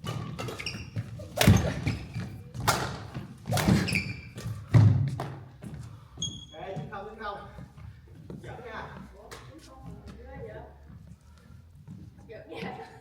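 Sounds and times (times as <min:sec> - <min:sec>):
sneaker squeaks: 0:00.0 - 0:05.0, 0:06.0 - 0:07.0
racket hitting shuttlecock: 0:00.0 - 0:05.4.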